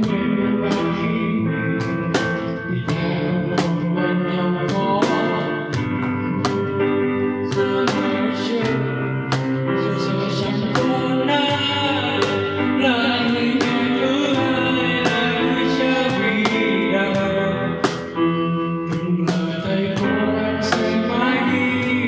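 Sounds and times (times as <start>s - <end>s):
steady drum beat: 0.0s - 1.2s, 1.8s - 3.9s, 4.7s - 6.9s, 7.5s - 9.8s, 10.4s - 21.2s
guitar: 0.0s - 22.0s
band playing a song: 1.8s - 3.9s, 4.7s - 6.8s, 7.5s - 18.3s.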